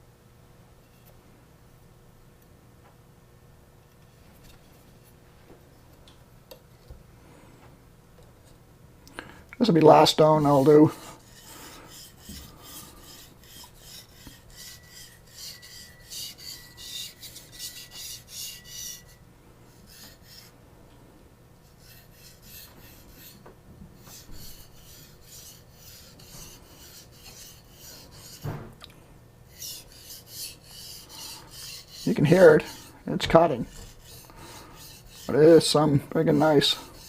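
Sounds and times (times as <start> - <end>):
knife stroked on whetstone: 9.9 - 20.5, 21.6 - 23.4, 24.0 - 28.6, 29.5 - 37.0.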